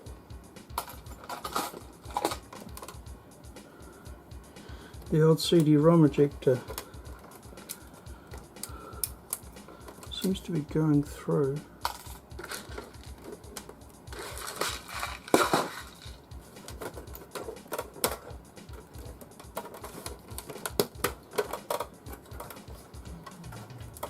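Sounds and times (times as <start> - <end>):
screws clattering on metal case: 0.8 - 2.9.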